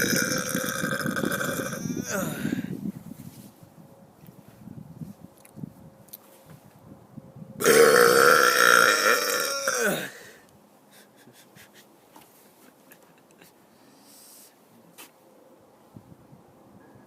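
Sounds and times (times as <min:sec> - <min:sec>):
man burping loudly: 0:00.0 - 0:02.7, 0:07.6 - 0:10.4.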